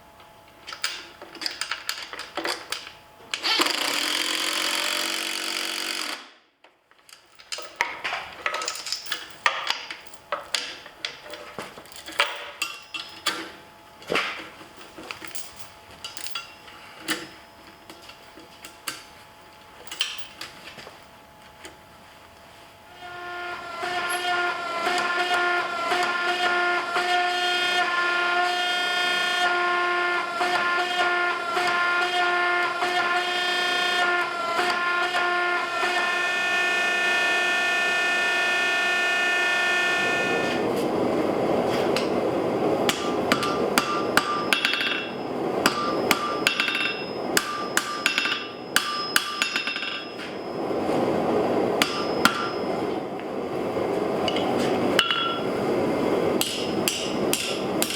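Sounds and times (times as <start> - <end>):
hammer striking steel on anvil: 42.9 - 50.6, 51.8 - 52.7, 54.3 - 55.5, 56.4 - 57.9.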